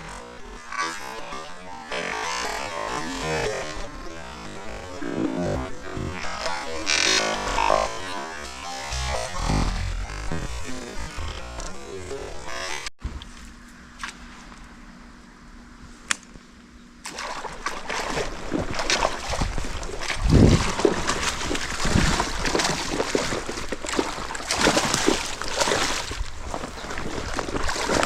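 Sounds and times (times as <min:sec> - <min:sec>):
water splashing and sloshing: 0:17.0 - 0:28.0.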